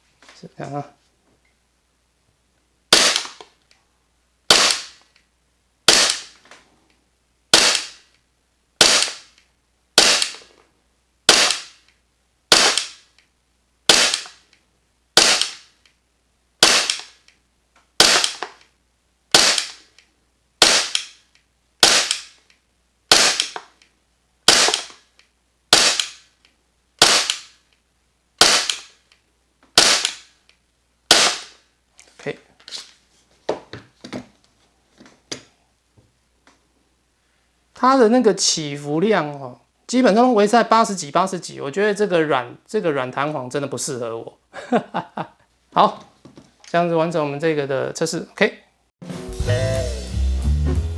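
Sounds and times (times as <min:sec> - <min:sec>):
airsoft pistol shots: 0:02.9 - 0:03.5, 0:04.5 - 0:05.0, 0:05.9 - 0:06.4, 0:07.5 - 0:08.1, 0:08.8 - 0:09.4, 0:10.0 - 0:10.5, 0:11.3 - 0:11.9, 0:12.5 - 0:13.1, 0:13.9 - 0:14.4, 0:15.2 - 0:15.8, 0:16.6 - 0:17.2, 0:18.0 - 0:18.6, 0:19.3 - 0:19.9, 0:20.6 - 0:21.2, 0:21.8 - 0:22.4, 0:23.1 - 0:23.7, 0:24.5 - 0:25.0, 0:25.7 - 0:26.3, 0:27.0 - 0:27.6, 0:28.4 - 0:29.0, 0:29.8 - 0:30.3, 0:31.1 - 0:31.6.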